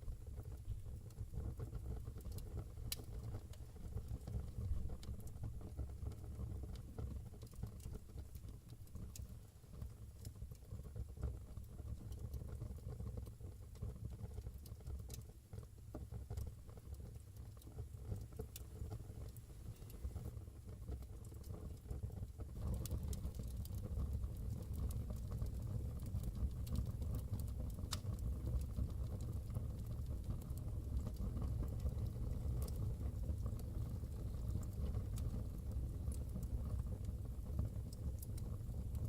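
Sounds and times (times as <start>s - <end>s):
fire burning in a fireplace: 0.0s - 39.0s
fire crackling and popping: 0.0s - 39.0s.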